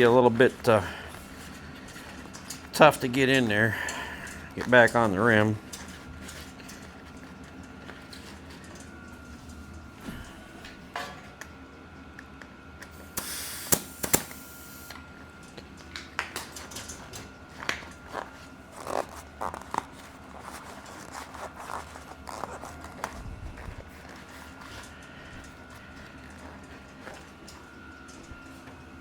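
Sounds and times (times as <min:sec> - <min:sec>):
loud snaps: 0:13.2 - 0:14.4.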